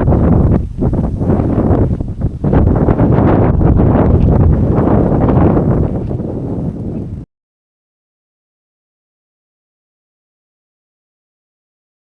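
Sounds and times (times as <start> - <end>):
wind buffeting microphone: 0.0 - 7.3.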